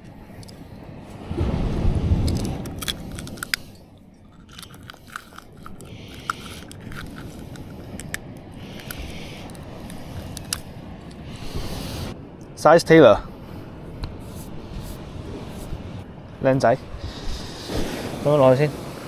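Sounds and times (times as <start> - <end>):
fish being handled and unhooked: 0.0 - 1.2, 2.2 - 12.1
short hisses: 11.2 - 12.2.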